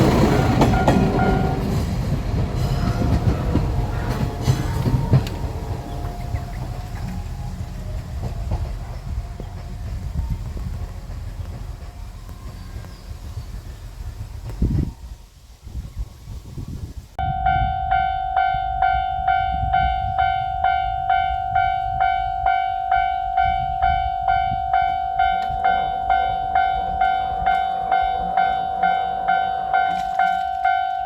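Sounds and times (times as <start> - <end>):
railroad crossing warning bell: 0.0 - 12.9, 17.2 - 31.0.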